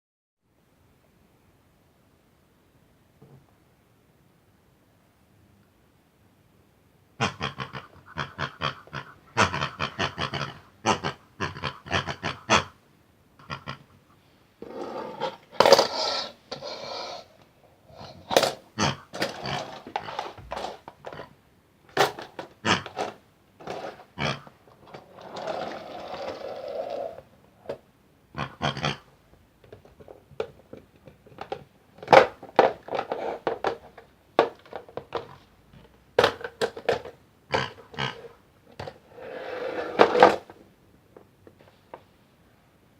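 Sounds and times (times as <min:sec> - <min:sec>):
pig-like grunting and growling: 0:07.2 - 0:12.8, 0:13.4 - 0:13.9, 0:17.9 - 0:21.4, 0:22.6 - 0:24.6, 0:28.3 - 0:29.1, 0:37.5 - 0:38.4.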